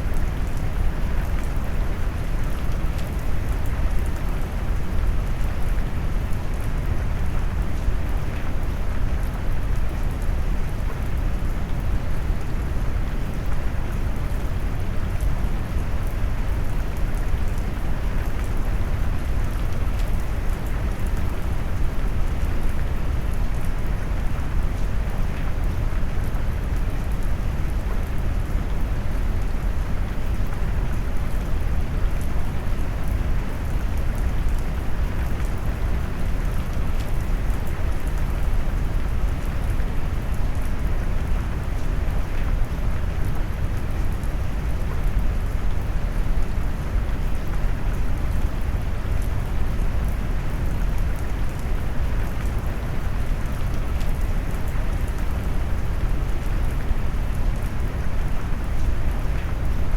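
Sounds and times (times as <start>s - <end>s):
faint patter of raindrops: 0.0s - 59.9s.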